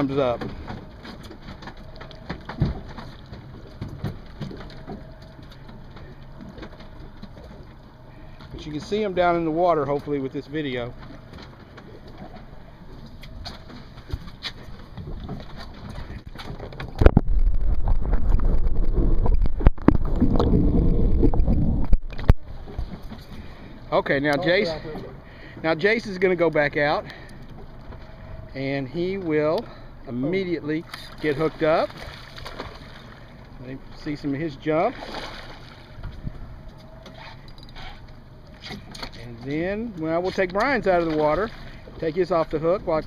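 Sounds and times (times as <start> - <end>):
wind buffeting microphone: 16.1 - 23.1.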